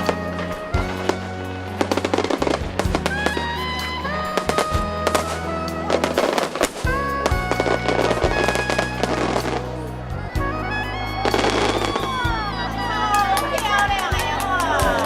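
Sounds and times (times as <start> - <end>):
fireworks bangs and crackling: 0.0 - 9.8
music with steady bass: 0.0 - 15.0.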